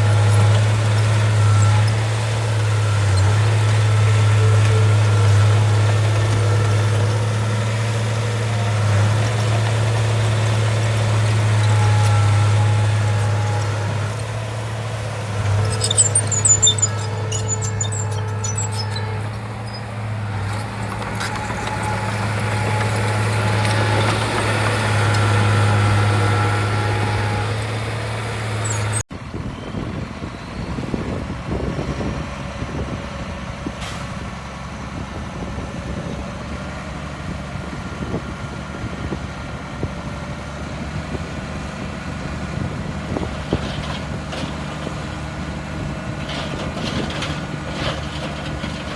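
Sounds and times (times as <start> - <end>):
high squeaks: 0.0 - 29.0
bulldozer diesel engine running: 0.0 - 48.9.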